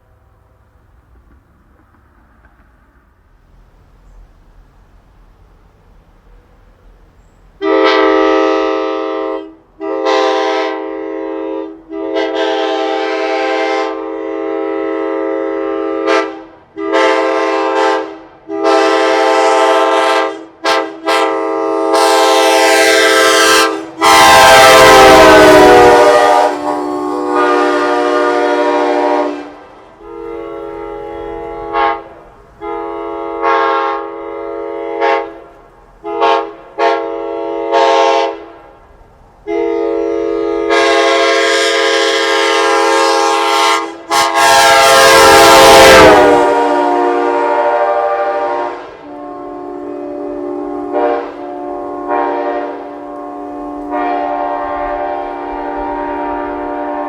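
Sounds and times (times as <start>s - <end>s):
air horn blasts: 7.6s - 38.7s, 39.4s - 57.0s.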